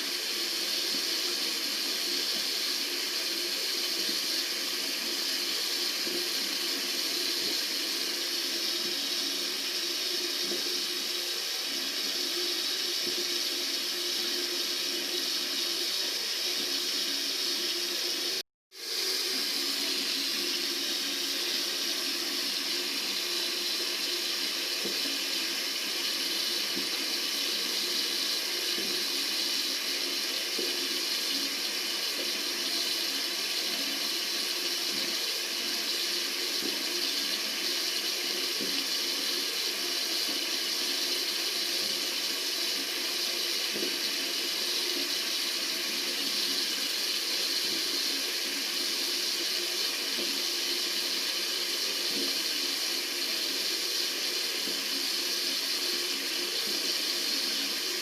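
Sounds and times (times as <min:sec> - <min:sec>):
water running from a tap: 0:00.0 - 0:58.0.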